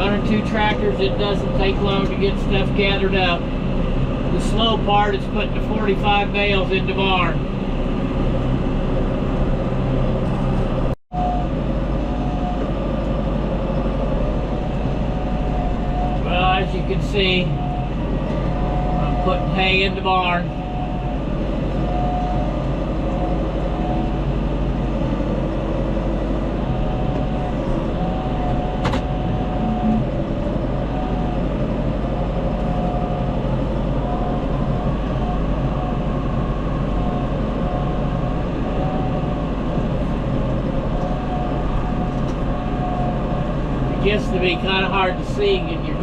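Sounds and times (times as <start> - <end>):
tractor engine running: 0.0 - 46.0
thin high whine: 28.0 - 31.4.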